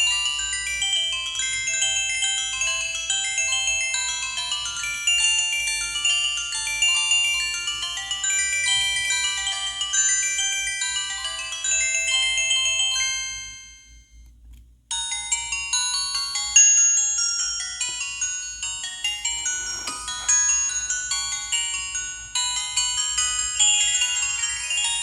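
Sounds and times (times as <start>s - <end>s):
mobile phone ringtone melody: 0.0s - 14.2s, 15.0s - 25.0s.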